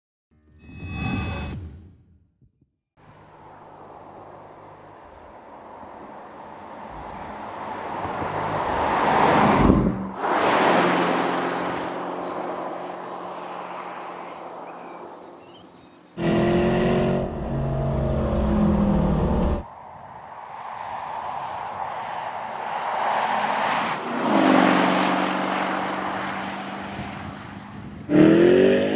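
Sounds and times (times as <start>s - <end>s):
car engine passing: 3.0s - 28.9s
rising engine sound: 16.2s - 19.6s.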